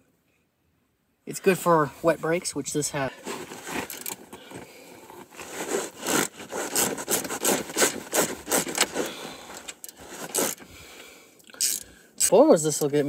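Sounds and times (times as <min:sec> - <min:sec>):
scraping and rubbing strokes: 0:03.0 - 0:10.7.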